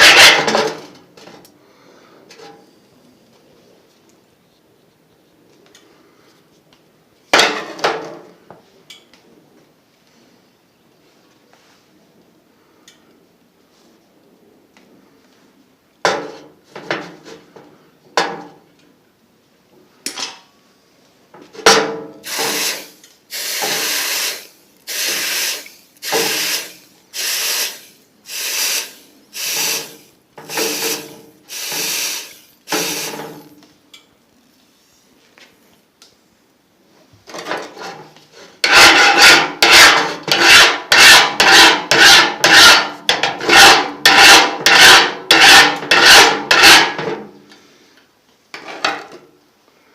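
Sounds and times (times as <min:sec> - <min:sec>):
hand tool rasping over steel: 0:22.2 - 0:33.5, 0:38.6 - 0:47.0.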